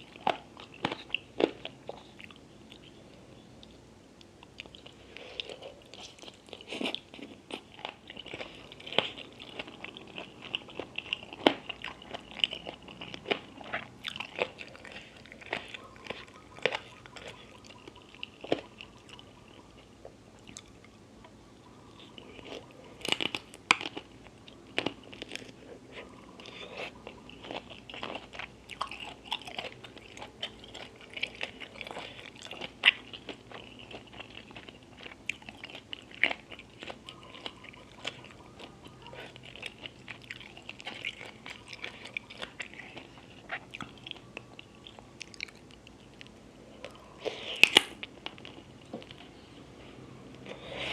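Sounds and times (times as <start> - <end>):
wet crunchy chewing: 21.9 - 49.4.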